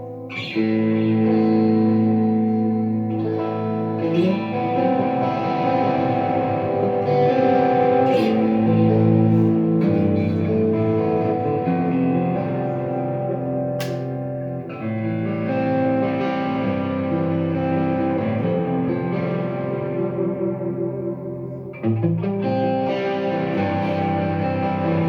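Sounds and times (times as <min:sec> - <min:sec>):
electric guitar chords: 0:00.0 - 0:25.0
guitar pick click: 0:00.3 - 0:14.9.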